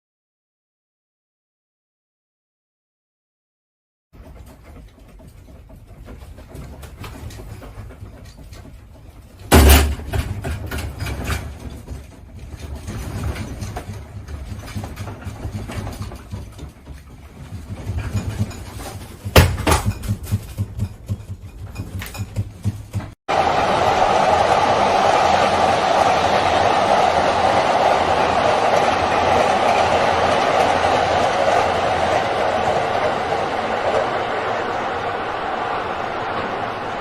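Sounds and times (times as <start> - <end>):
rattling and clattering: 4.2 - 23.2.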